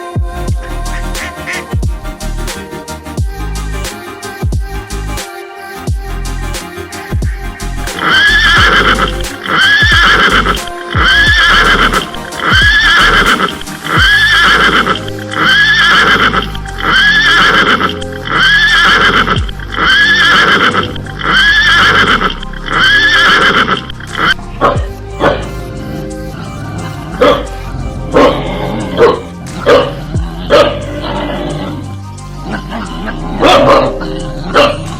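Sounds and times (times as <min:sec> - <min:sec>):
low thudding beat: 0:00.0 - 0:05.2, 0:05.9 - 0:15.8, 0:19.2 - 0:19.9, 0:23.9 - 0:34.9
looped horse whinny: 0:08.0 - 0:25.4.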